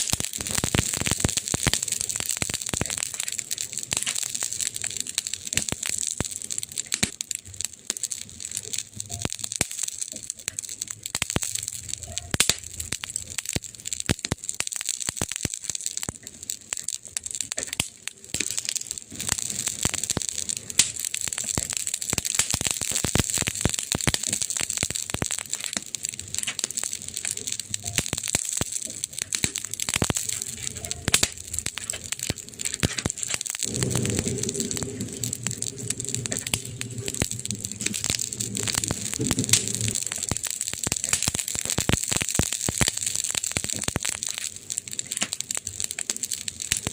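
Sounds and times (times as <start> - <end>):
hiss of flames: 0.0 - 46.9
wood fire crackling: 0.0 - 46.9
deep low rumble: 33.4 - 40.4.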